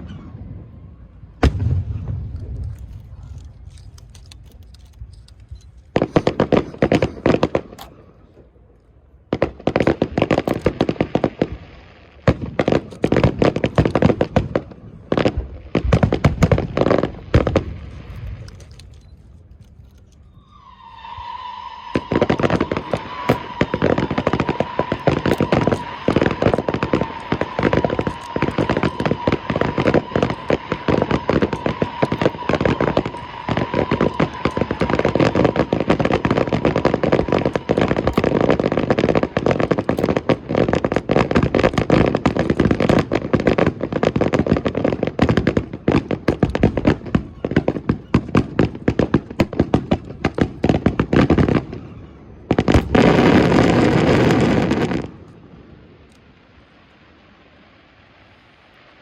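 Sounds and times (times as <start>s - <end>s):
fireworks cracking bursts: 0.0s - 59.0s.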